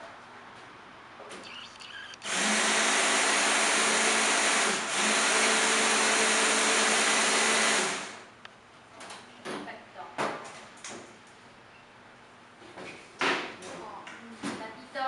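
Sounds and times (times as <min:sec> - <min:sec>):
electric hand blender running: 0:02.2 - 0:08.2.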